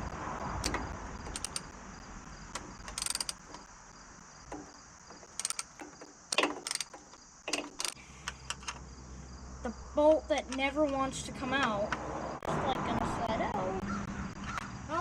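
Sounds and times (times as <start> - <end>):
socket ratchet clicking: 0.6 - 1.7, 2.5 - 3.6, 4.5 - 8.8.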